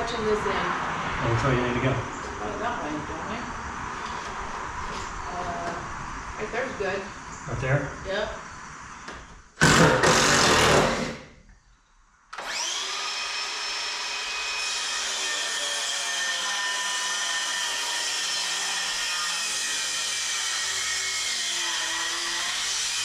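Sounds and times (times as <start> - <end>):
power tool burst: 9.6 - 11.3, 12.4 - 15.3
electric motor whining: 12.4 - 14.9.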